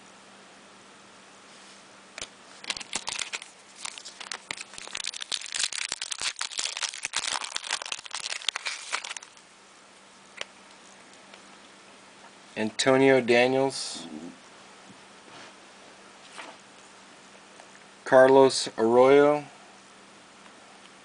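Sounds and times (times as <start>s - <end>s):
foil wrapper crinkling and tearing: 2.5s - 9.4s.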